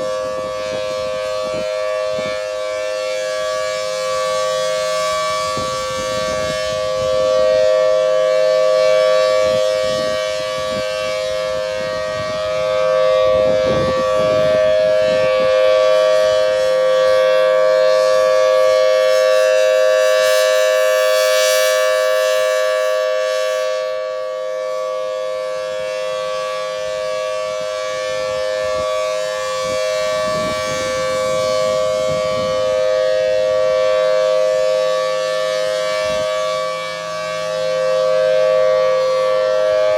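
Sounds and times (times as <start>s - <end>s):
two-note warning siren: 0.0s - 39.9s.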